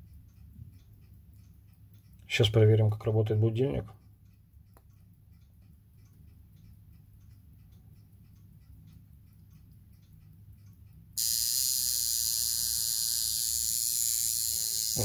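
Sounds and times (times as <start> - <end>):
wristwatch ticking: 0.0 - 15.0
high-pitched alarm buzz: 11.2 - 15.0.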